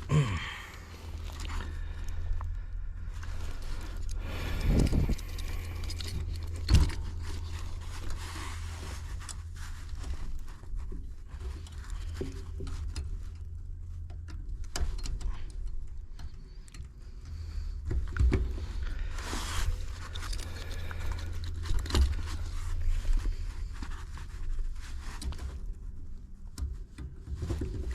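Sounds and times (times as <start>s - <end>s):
steady low rumble: 0.0s - 27.9s
scrapes: 3.1s - 12.9s, 18.4s - 25.9s.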